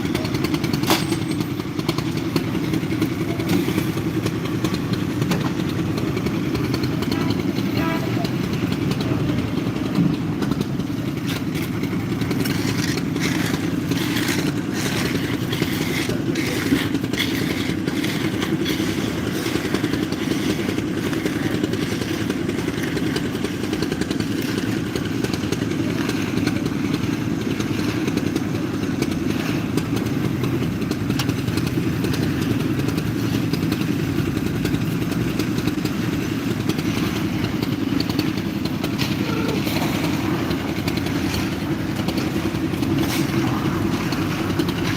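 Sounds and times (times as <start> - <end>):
heavy machinery engine running: 0.0 - 44.9.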